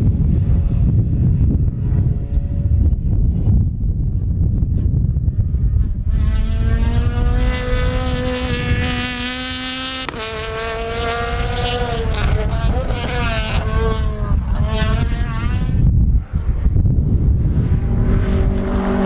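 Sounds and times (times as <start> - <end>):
wind buffeting microphone: 0.0 - 19.0
car engine revving high: 6.1 - 15.9, 17.2 - 19.0.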